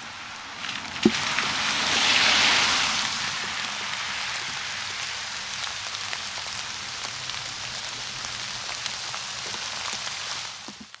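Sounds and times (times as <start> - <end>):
steady rain falling: 0.0 - 11.0
raindrops ticking on hard surface: 2.9 - 11.0.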